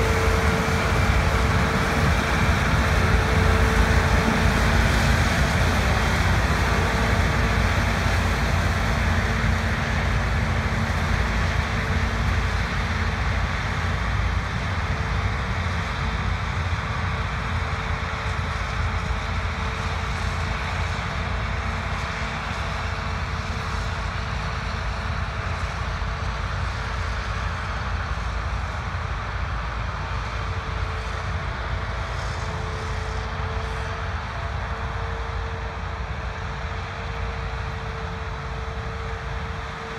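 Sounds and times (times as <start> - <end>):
harvest machinery engine drone: 0.0 - 39.9
machinery whine: 0.0 - 39.9.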